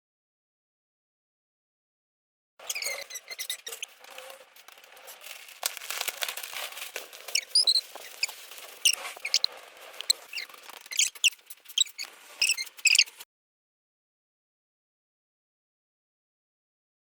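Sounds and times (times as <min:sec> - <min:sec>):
short high sliding squeaks: 0:02.6 - 0:04.4, 0:07.3 - 0:13.2.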